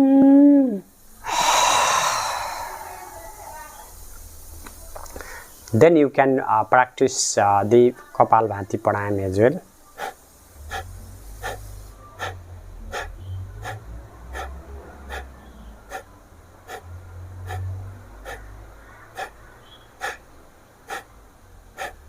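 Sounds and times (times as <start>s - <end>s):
forceful nasal exhalations: 1.1s - 4.2s, 10.0s - 16.1s, 16.7s - 18.5s, 21.8s - 22.0s.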